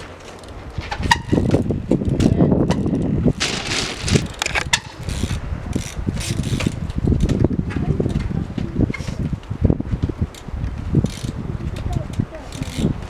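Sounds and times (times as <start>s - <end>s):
bike tyres rolling and scrubbing: 0.0s - 13.0s
sharp knocks of bike landings: 0.3s - 7.7s.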